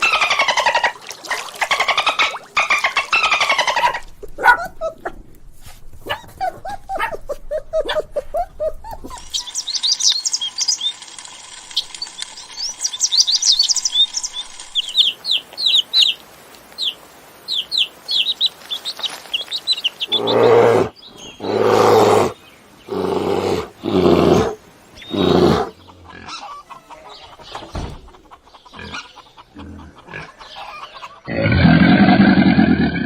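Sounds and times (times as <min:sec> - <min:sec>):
small birds chirping: 0:06.0 - 0:31.3.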